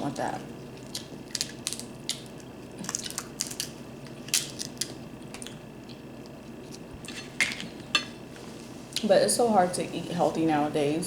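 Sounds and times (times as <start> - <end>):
shellfish shells cracking: 0.8 - 5.6.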